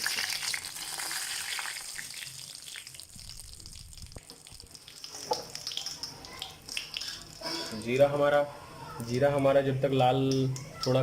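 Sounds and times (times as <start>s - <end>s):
seeds sizzling in hot oil: 0.0s - 7.8s.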